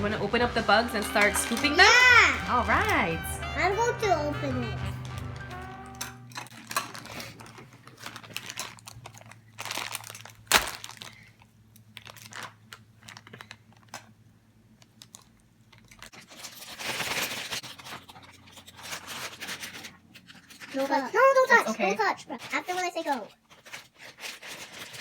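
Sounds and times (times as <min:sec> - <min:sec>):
packaging tearing and crinkling: 0:05.0 - 0:14.1, 0:14.9 - 0:20.8, 0:23.4 - 0:25.0.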